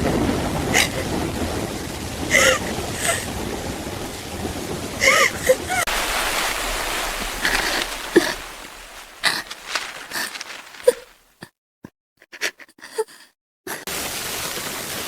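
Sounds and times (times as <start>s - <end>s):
steady rain falling: 5.9s - 11.3s.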